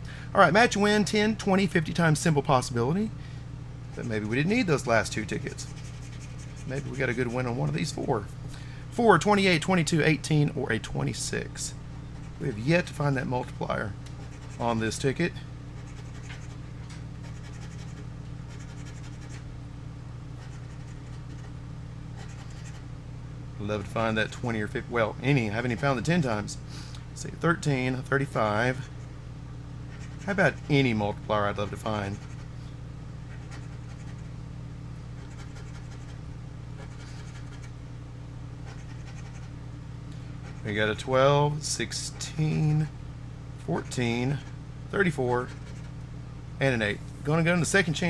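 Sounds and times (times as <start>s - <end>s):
steady low hum: 0.0s - 48.0s
scratching a lottery ticket: 3.9s - 8.0s, 14.2s - 15.2s, 15.8s - 16.6s, 17.2s - 19.5s, 20.4s - 21.6s, 22.2s - 22.8s, 29.9s - 31.0s, 31.6s - 32.5s, 33.3s - 34.3s, 35.2s - 36.2s, 36.8s - 37.7s, 38.6s - 39.5s, 45.4s - 46.0s.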